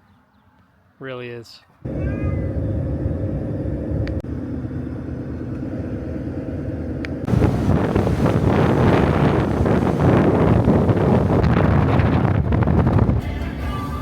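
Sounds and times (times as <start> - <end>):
road rumble: 1.8 - 13.2
vehicle engine droning: 1.9 - 11.4
rough wind noise: 7.2 - 13.3.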